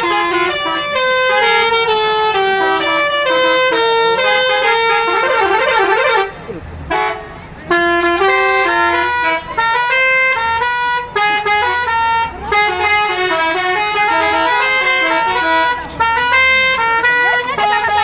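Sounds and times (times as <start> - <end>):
bus horn playing a melody: 0.0 - 18.0.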